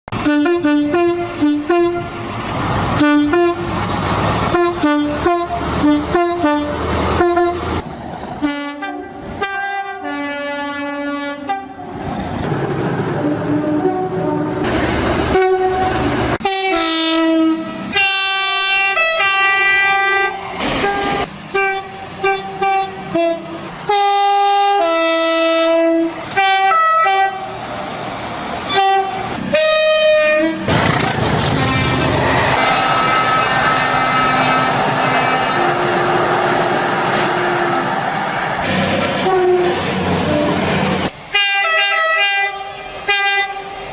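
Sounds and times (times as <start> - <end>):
two-tone train horns: 0.1 - 2.3, 2.9 - 3.8, 4.4 - 7.8, 8.4 - 12.0, 13.2 - 27.6, 28.6 - 30.7, 31.4 - 38.0, 38.6 - 43.9
rumble of passing trains: 0.1 - 43.9.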